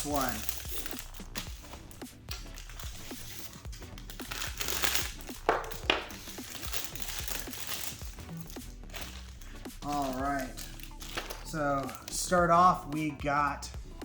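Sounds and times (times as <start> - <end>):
plastic bag crinkling: 0.0 - 12.8
sharp plastic crackles: 0.0 - 13.1.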